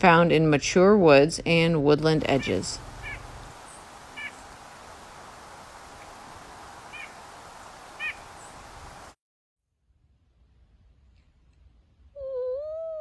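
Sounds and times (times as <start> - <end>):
steady background hiss: 2.2 - 9.2
bird giving short clipped calls: 2.4 - 4.6, 6.9 - 7.2, 8.0 - 8.6.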